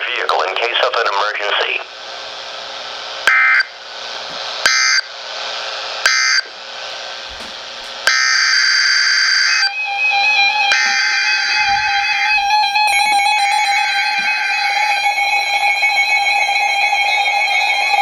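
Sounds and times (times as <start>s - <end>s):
radio static hiss: 0.0s - 18.0s
steady tones: 1.3s - 18.0s
screechy digital data tones: 8.1s - 18.0s.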